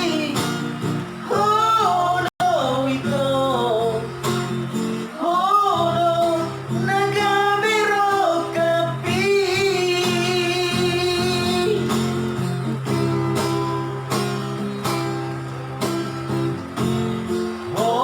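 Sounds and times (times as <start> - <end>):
person singing: 0.0 - 12.2, 17.7 - 18.0
guitar accompaniment: 0.0 - 18.0.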